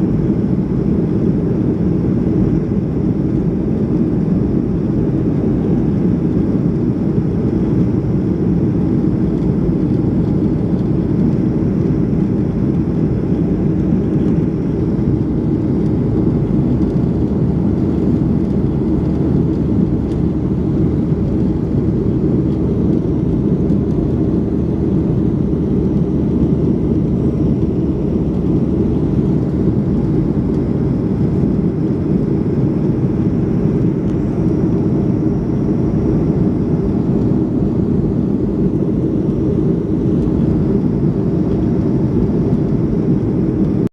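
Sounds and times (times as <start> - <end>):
air rushing along fuselage: 0.0 - 43.9
jet engines droning: 0.0 - 43.9.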